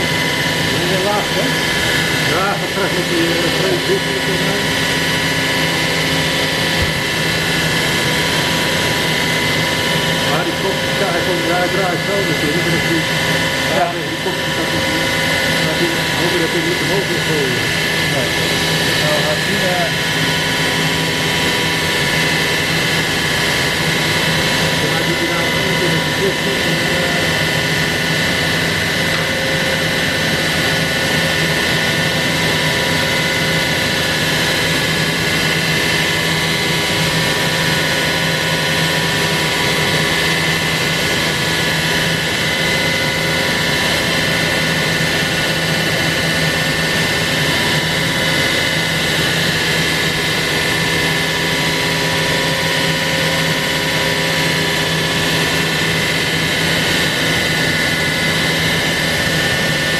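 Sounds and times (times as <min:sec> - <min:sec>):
router spindle high whine: 0:00.0 - 0:59.9.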